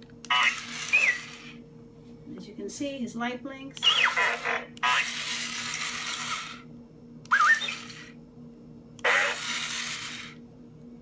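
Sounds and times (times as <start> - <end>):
small motor humming: 0.3 - 1.6, 3.8 - 6.7, 7.3 - 8.2, 9.0 - 10.4
rising electronic whistles: 0.4 - 1.5, 3.8 - 4.3, 7.3 - 8.1.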